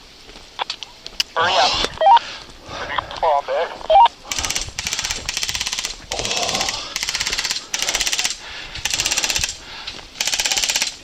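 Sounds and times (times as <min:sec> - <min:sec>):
airsoft rifle firing bursts: 0:04.3 - 0:09.6, 0:10.2 - 0:11.0.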